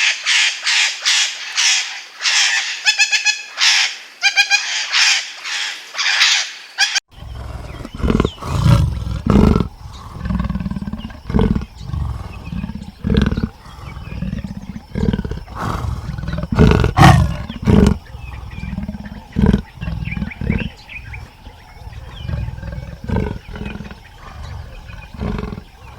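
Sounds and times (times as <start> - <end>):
lion roaring: 7.1 - 25.9.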